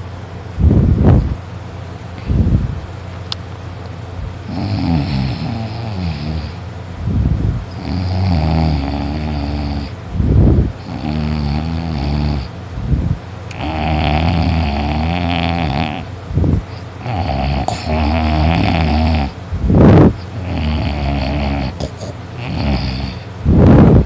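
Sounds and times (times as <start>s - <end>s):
person snoring loudly: 4.4s - 6.6s, 7.8s - 10.0s, 10.8s - 12.5s, 13.5s - 16.1s, 16.7s - 24.0s.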